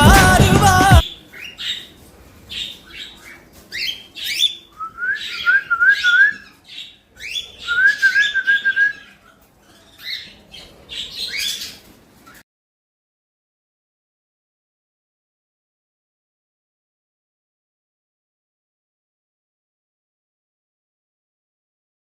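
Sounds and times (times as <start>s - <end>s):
parrots chirping: 0.7s - 12.4s.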